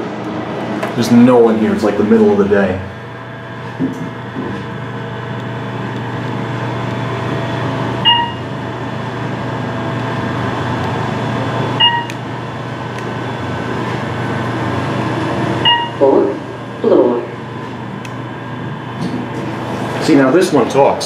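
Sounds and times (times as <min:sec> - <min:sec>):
steady low hum: 0:00.0 - 0:21.0
elevator chime beep: 0:08.0 - 0:08.5, 0:11.8 - 0:12.2, 0:15.6 - 0:16.4.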